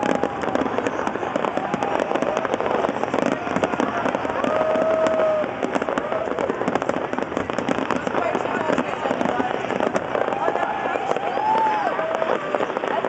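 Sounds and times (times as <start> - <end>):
fireworks bangs and crackling: 0.0 - 13.0.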